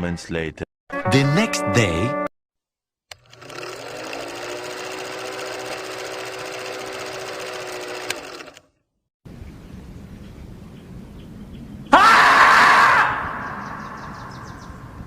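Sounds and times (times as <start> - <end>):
small motor chattering: 3.1 - 8.7.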